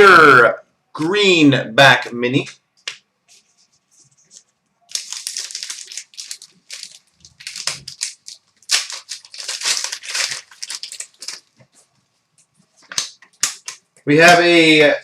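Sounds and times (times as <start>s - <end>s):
cards being handled: 4.2s - 11.9s
foil wrapper tearing and crinkling: 4.9s - 11.6s, 12.9s - 13.8s.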